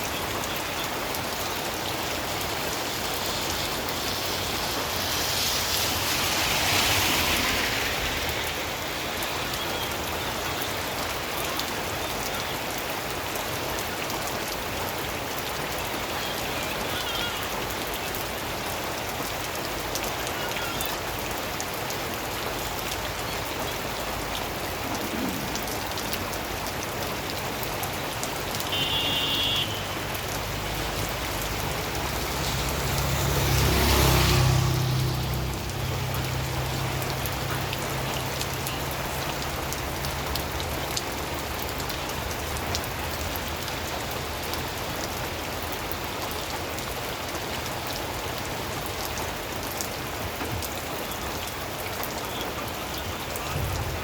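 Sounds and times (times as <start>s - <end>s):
steady rain falling: 0.0s - 54.0s
vehicle passing: 4.9s - 8.9s, 30.4s - 40.4s.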